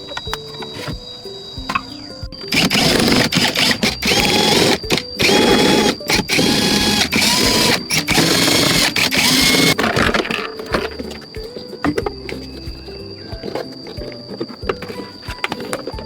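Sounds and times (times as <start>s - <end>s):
small electric motor whining: 2.4s - 10.1s.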